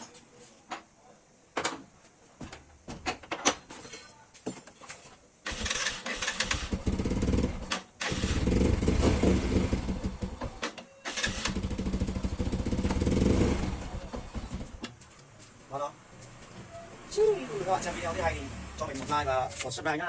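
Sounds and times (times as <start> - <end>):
small motorcycle engine running: 6.4 - 10.6, 11.2 - 14.8.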